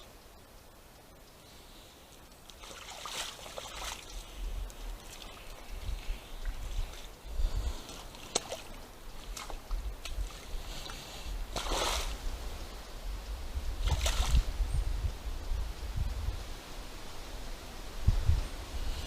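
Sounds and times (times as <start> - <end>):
water and mud splashing: 2.4 - 12.7, 13.6 - 14.6.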